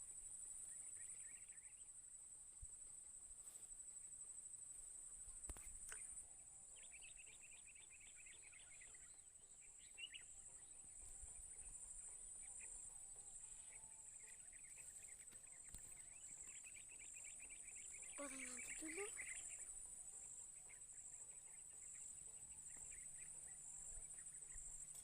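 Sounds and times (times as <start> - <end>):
high-pitched insect drone: 16.6 - 20.3.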